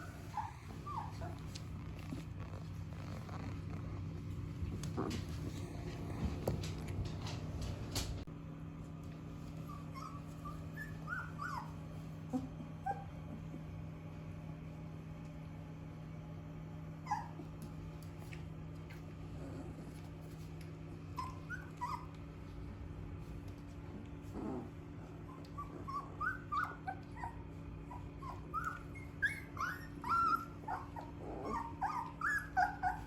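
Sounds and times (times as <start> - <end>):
puppies squeaking and whimpering: 0.0 - 3.8, 9.6 - 13.3, 21.0 - 22.2, 25.3 - 33.0
steady low hum: 0.0 - 33.0.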